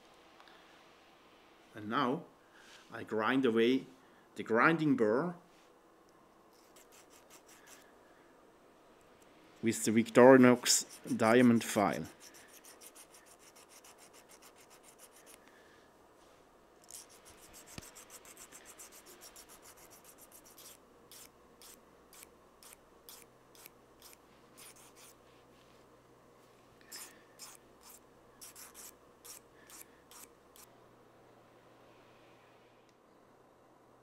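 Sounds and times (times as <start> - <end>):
file strokes on steel tweezers: 6.6 - 7.8, 10.6 - 15.4, 16.8 - 25.3, 26.9 - 30.7.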